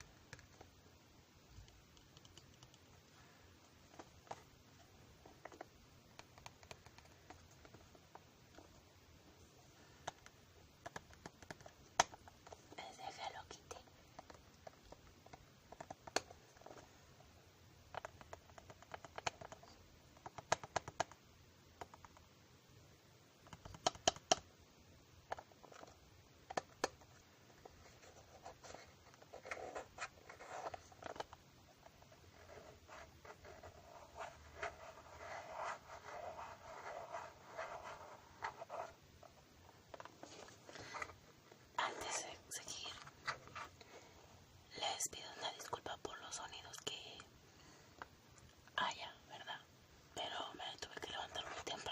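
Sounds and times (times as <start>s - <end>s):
soft rubbing and scratching: 11.5s - 17.3s, 26.8s - 44.4s, 50.9s - 51.9s.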